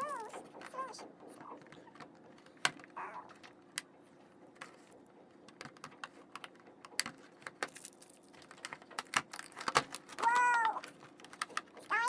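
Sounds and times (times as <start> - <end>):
packaging being opened by hand: 4.6 - 12.0.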